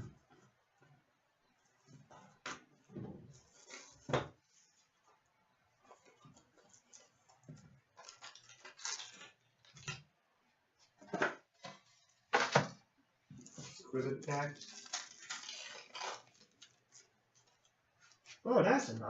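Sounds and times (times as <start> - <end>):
packaging rustling: 7.9 - 9.8, 13.4 - 18.4.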